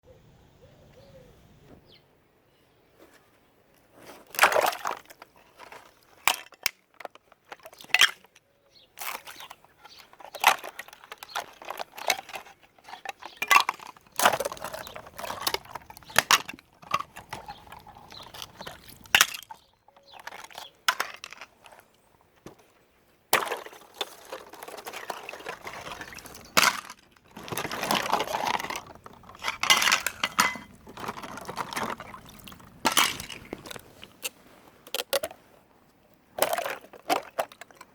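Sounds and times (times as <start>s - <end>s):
container knocking and clinking: 10.3s - 19.6s, 23.4s - 33.9s
water pouring into a dish: 31.9s - 33.5s.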